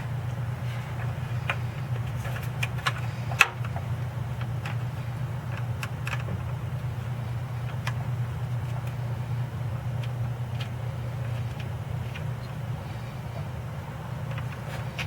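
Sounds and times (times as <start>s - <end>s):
steady low hum: 0.0s - 15.0s.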